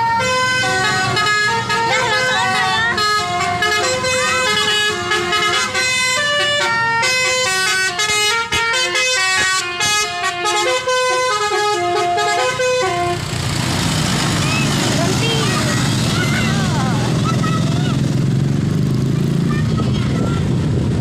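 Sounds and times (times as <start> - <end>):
bus trumpet horns playing melody: 0.0 - 13.4.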